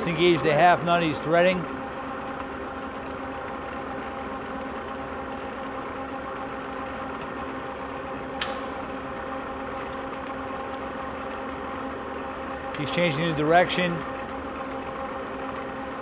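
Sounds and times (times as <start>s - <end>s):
lathe humming: 0.0s - 16.0s
sharp click: 8.4s - 8.8s.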